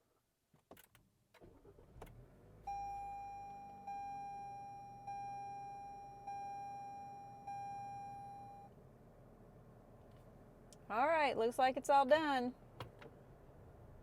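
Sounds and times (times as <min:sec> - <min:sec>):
car dashboard chime: 0:02.7 - 0:08.7.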